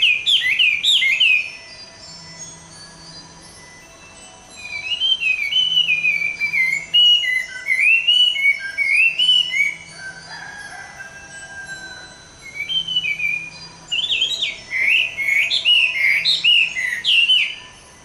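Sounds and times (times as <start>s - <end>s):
bird singing whistled phrases: 0.0s - 1.8s, 4.6s - 10.1s, 12.4s - 17.8s.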